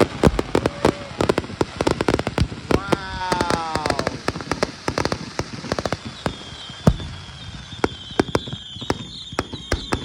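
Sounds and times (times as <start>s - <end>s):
firework bang: 0.0s - 10.0s
fireworks cracking and popping: 0.0s - 10.0s
high whistle: 6.1s - 10.0s.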